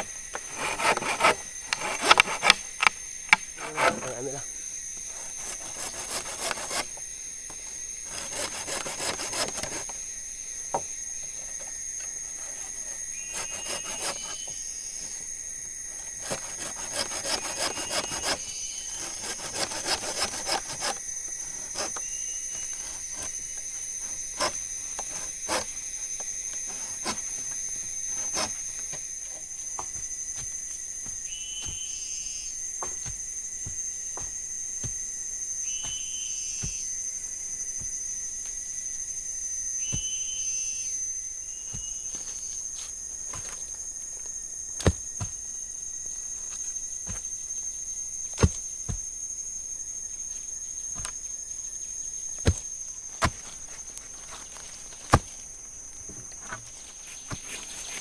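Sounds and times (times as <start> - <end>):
wood being sawn by hand: 0.0 - 4.4, 5.0 - 10.0, 11.2 - 15.3, 15.9 - 29.4, 52.4 - 58.0
high insect drone: 0.0 - 58.0
insect chirps: 0.0 - 58.0.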